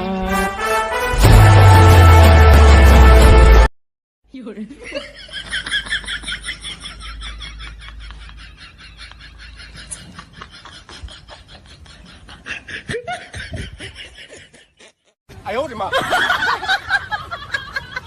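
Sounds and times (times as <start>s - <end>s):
person laughing in bursts: 4.8s - 15.1s.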